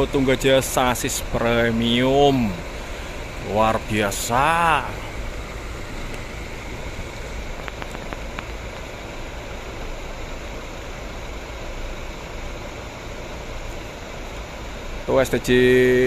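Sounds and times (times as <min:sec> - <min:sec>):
diesel bus engines idling: 0:00.0 - 0:07.6
faint clicks: 0:07.6 - 0:08.9.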